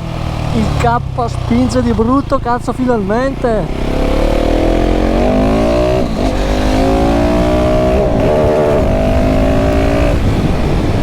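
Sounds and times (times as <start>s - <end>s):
motorcycle engine accelerating: 0.0s - 11.0s.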